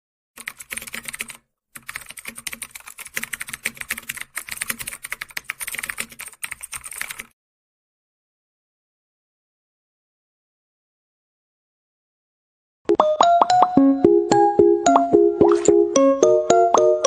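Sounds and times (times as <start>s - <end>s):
computer keyboard typing: 0.4s - 7.3s.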